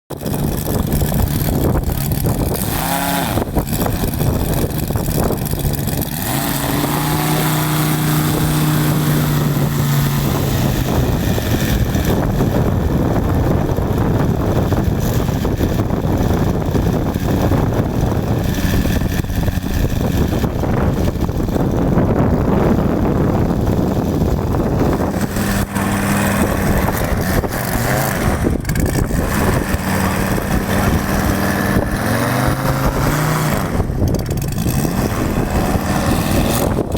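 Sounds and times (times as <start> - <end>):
model airplane engine and propeller: 0.1 - 36.9
loud rushing noise: 23.5 - 36.9.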